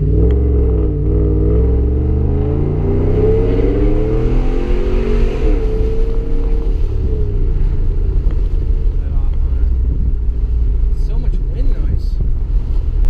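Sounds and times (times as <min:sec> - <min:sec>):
truck engine accelerating: 0:00.0 - 0:11.4.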